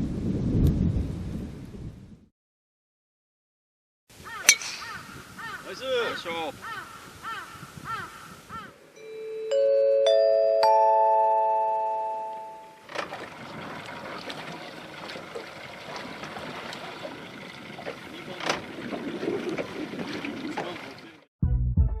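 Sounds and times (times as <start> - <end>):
birds calling: 4.2 - 9.0, 12.7 - 21.2
four-note chime: 9.0 - 12.8
boat on the water: 10.7 - 21.3.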